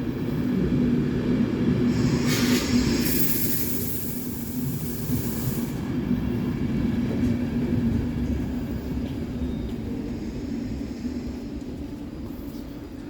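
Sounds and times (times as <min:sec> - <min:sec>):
train rumbling with low hum: 0:00.0 - 0:13.0
high hiss: 0:01.8 - 0:05.8.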